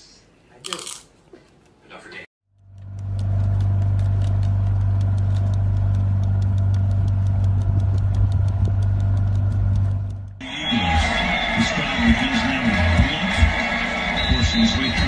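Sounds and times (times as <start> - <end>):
low machine hum: 2.5 - 15.0
fast even ticking: 2.6 - 10.4.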